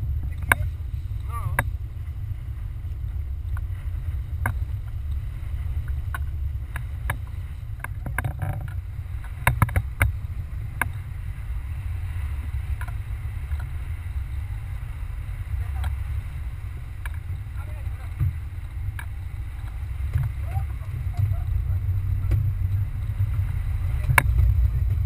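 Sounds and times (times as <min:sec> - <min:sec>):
boat engine rumbling: 0:00.0 - 0:25.0
sharp clicks and knocks: 0:05.8 - 0:10.2.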